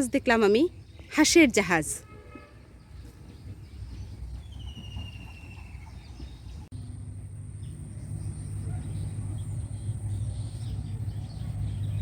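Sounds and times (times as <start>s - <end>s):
faint bird chirps: 2.8s - 6.7s
steady low rumble: 6.2s - 12.0s.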